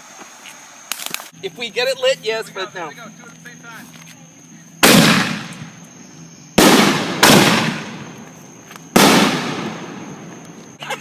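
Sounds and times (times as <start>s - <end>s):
fireworks bangs with echo: 4.8s - 5.8s, 6.6s - 8.3s, 8.9s - 10.6s.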